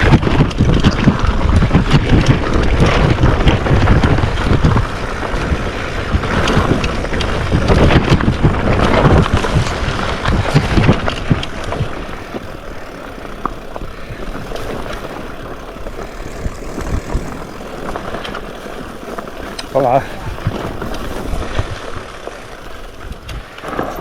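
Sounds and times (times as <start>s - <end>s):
wind buffeting microphone: 0.0s - 24.0s.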